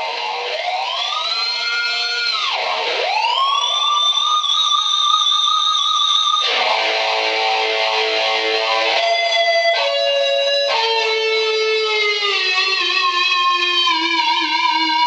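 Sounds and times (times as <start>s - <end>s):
distorted electric guitar: 0.0s - 15.0s.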